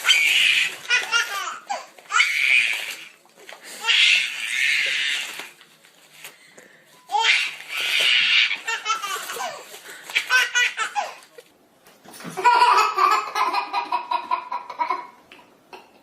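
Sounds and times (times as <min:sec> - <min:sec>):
baby laughing: 0:00.0 - 0:02.4, 0:07.2 - 0:11.3, 0:12.4 - 0:16.0.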